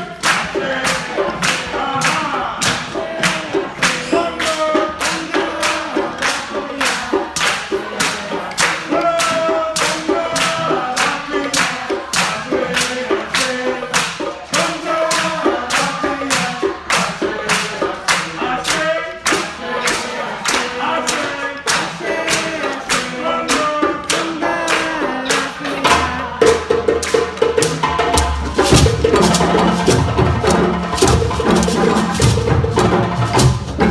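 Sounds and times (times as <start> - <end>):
hand drums playing fast rhythm: 0.0 - 33.9
pitched melody: 23.9 - 33.9.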